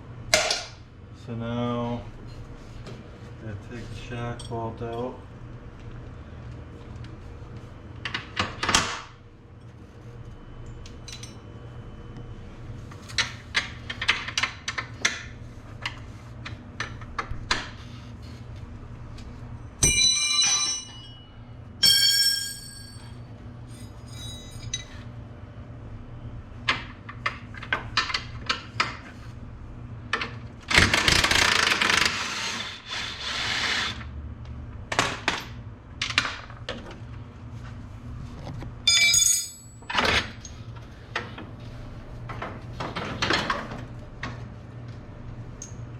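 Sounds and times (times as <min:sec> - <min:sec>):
ringing metal clinks: 0:19.8 - 0:23.2, 0:38.9 - 0:39.8.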